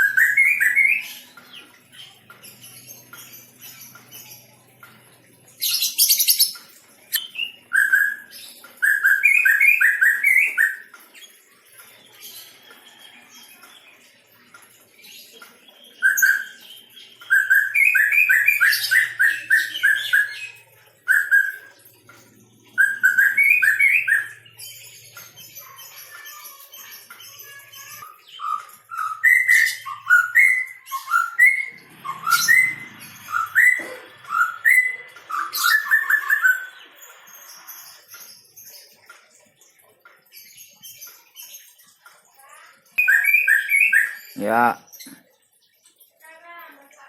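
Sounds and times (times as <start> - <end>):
bird singing whistled notes: 0.0 - 1.2, 16.0 - 21.7, 22.8 - 24.6, 28.0 - 36.8, 43.0 - 45.2.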